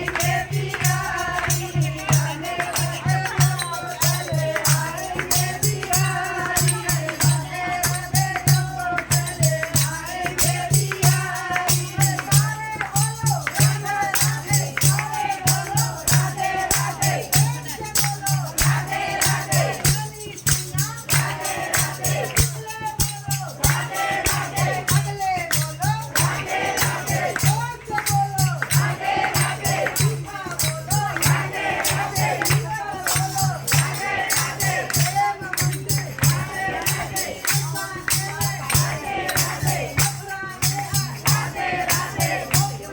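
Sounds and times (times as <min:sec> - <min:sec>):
jingling hand percussion: 0:00.0 - 0:42.9
steady drum beat: 0:00.0 - 0:42.9
voices singing: 0:00.0 - 0:42.9.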